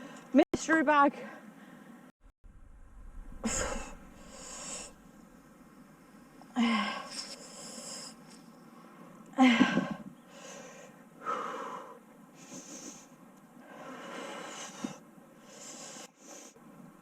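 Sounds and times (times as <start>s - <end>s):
person breathing heavily: 3.4s - 5.0s.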